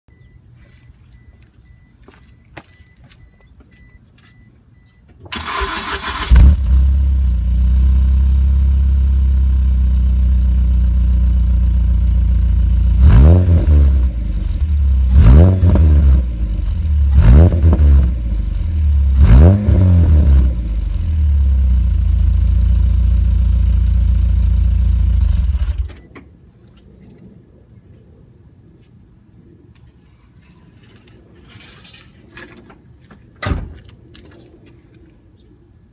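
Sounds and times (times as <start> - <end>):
motorcycle engine cranking: 5.3 - 6.8
unmuffled engine idling and revving: 5.3 - 26.0.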